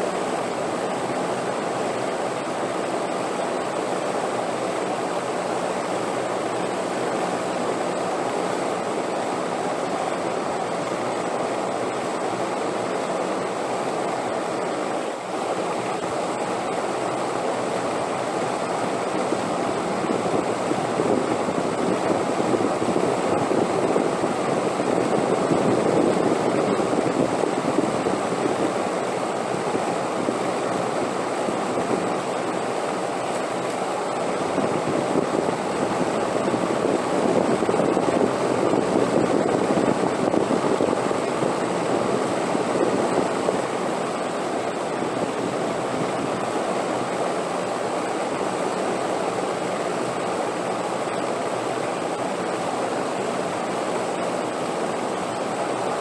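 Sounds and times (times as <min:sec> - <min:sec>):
rushing wind: 0:17.3 - 0:56.0.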